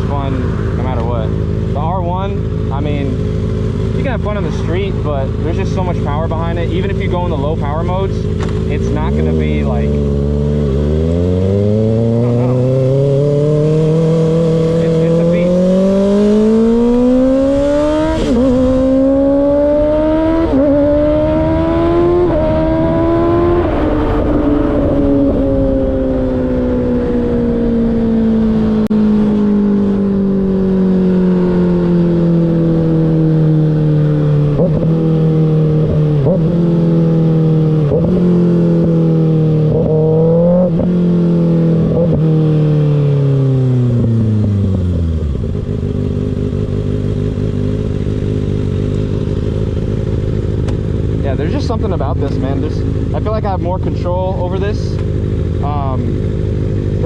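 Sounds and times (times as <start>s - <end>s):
motorcycle engine idling: 0.0s - 11.0s, 43.7s - 57.0s
motorcycle engine revving: 0.0s - 57.0s.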